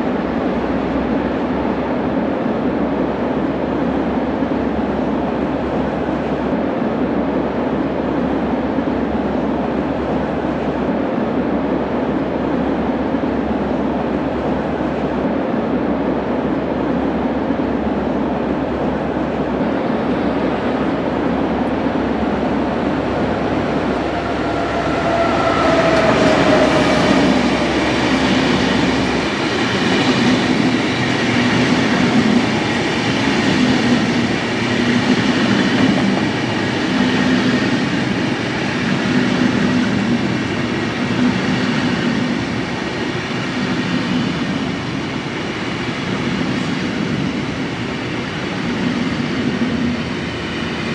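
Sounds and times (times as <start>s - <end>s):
train rumbling on rails: 0.0s - 50.9s
brief falling whine: 22.0s - 29.3s.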